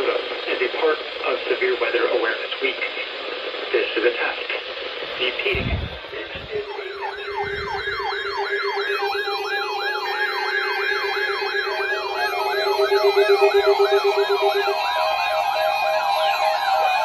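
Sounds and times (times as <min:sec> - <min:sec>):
steady beeping tones: 0:05.2 - 0:17.0
warbling electronic alarm tone: 0:05.5 - 0:17.0
pulsing beep: 0:06.3 - 0:09.3.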